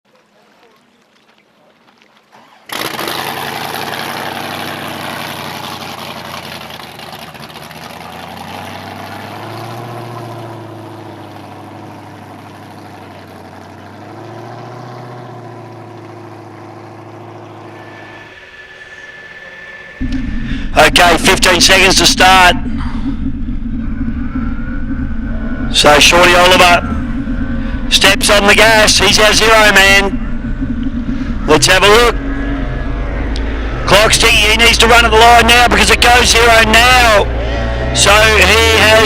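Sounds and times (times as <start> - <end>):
outboard motors running: 2.2 - 39.0.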